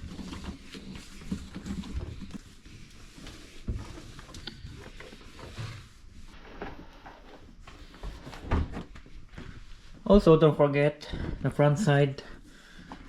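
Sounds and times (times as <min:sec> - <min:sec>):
cloth rag wiping dishwasher: 0:00.0 - 0:07.4.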